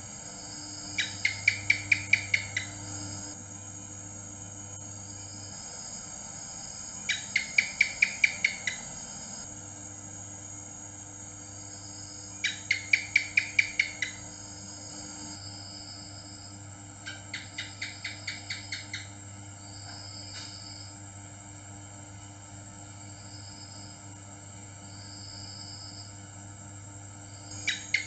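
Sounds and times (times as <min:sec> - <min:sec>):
gecko chirping: 0:01.0 - 0:03.3, 0:07.1 - 0:08.9, 0:12.4 - 0:14.2, 0:17.1 - 0:19.1, 0:27.5 - 0:28.0.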